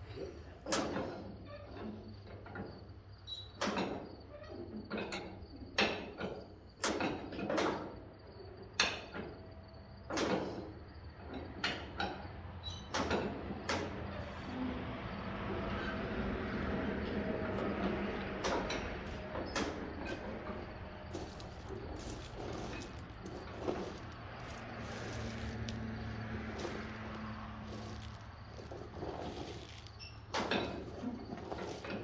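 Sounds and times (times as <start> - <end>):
metallic knocks and clanks: 17.7 - 32.0.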